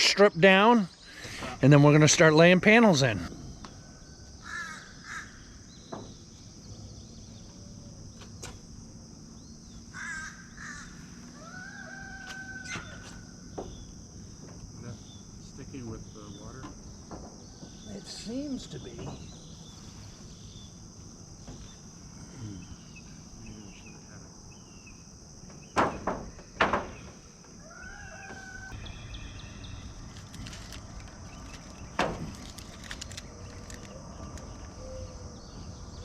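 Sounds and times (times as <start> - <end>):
high insect chorus: 0.0 - 36.0
sharp knocks: 25.4 - 27.2
bird chirps: 28.0 - 32.0.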